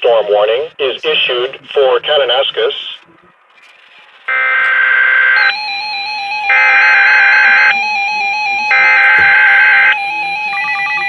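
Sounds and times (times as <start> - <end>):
thin electronic tone melody: 4.3 - 11.0.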